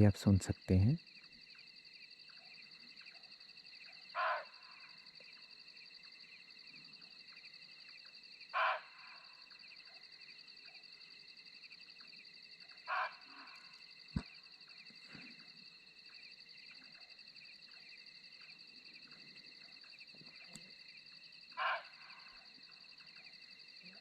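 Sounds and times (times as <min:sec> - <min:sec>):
wild animal calling: 0:04.1 - 0:04.7, 0:08.6 - 0:09.2, 0:12.9 - 0:13.7, 0:21.6 - 0:22.4.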